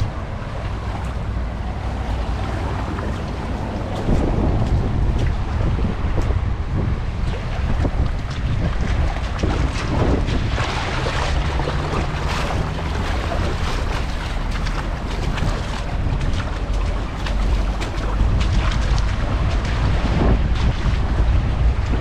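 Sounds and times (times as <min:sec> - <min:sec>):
small waves washing on beach: 0:00.0 - 0:22.0
wind buffeting microphone: 0:00.0 - 0:22.0.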